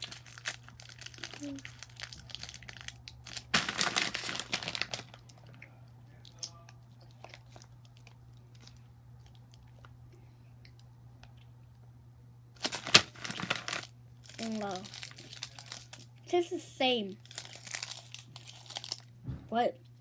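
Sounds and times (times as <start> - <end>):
candy wrapper crinkling: 0.0 - 5.6, 12.6 - 16.4, 17.1 - 19.2.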